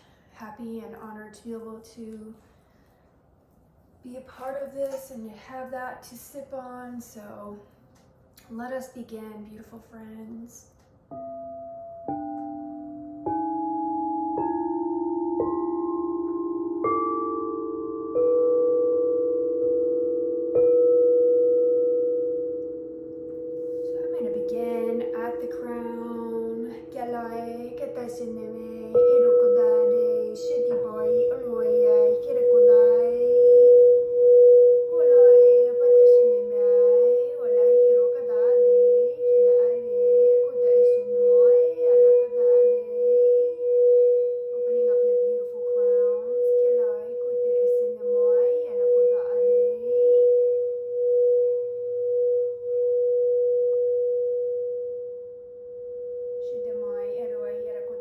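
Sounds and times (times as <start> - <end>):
singing bowl ringing: 11.1 - 58.0
woman singing wordlessly: 23.8 - 50.8, 56.4 - 58.0.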